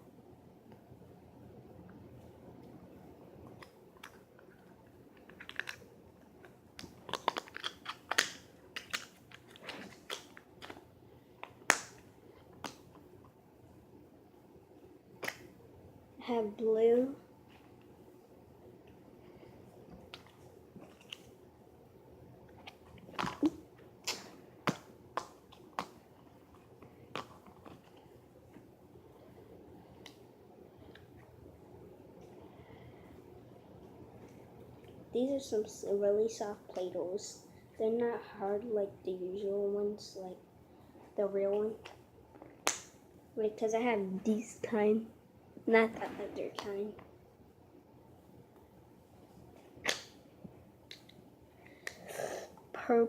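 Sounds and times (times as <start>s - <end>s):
plastic tubs clicking and crackling: 3.6s - 10.8s.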